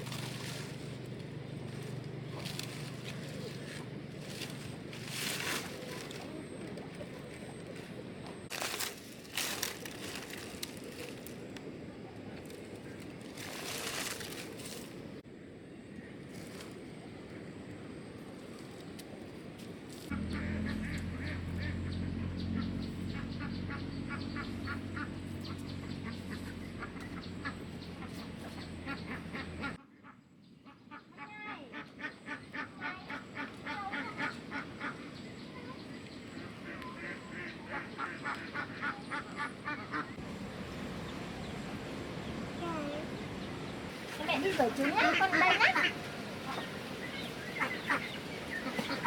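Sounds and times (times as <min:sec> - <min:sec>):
steady low hum: 0:00.0 - 0:29.8, 0:32.4 - 0:49.0
waterfowl honking and quacking: 0:20.1 - 0:31.1, 0:36.5 - 0:40.2, 0:44.4 - 0:49.0.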